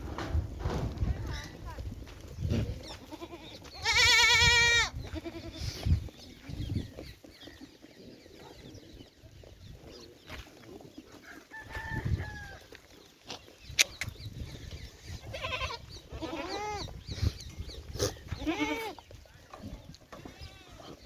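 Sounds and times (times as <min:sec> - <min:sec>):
goat bleating: 0:02.9 - 0:05.8, 0:15.2 - 0:16.9, 0:18.0 - 0:19.0, 0:20.2 - 0:21.0.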